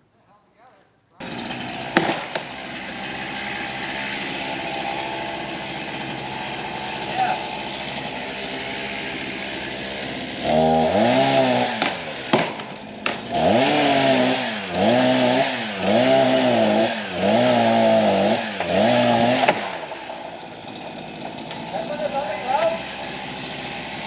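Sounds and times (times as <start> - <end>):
chainsaw engine revving: 1.2 - 24.0.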